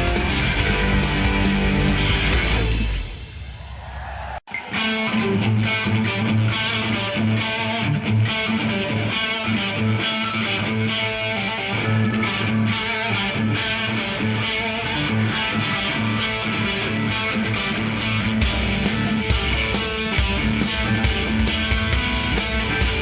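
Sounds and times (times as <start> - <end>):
electric guitar: 0.0 - 3.4, 4.5 - 23.0
bass: 0.0 - 3.8, 11.6 - 23.0
drums: 0.0 - 23.0.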